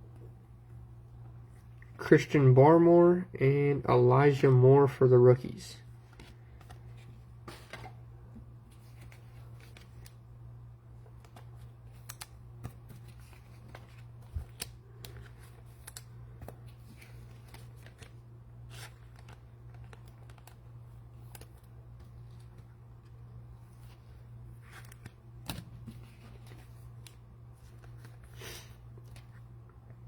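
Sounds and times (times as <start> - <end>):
steady low hum: 0.0 - 30.0
trading cards flipped through: 11.0 - 29.4.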